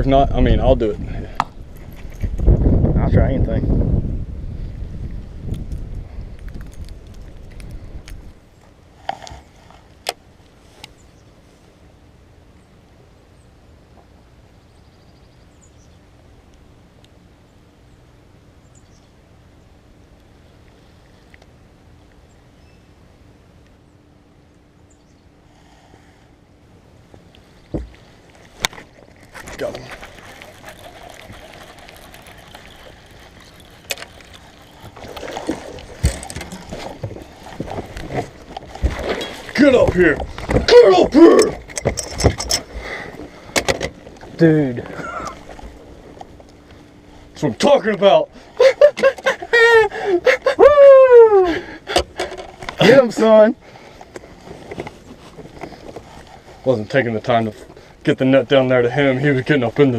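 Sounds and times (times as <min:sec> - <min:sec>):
rustling movement: 0:27.1 - 0:40.7, 0:52.2 - 0:58.0.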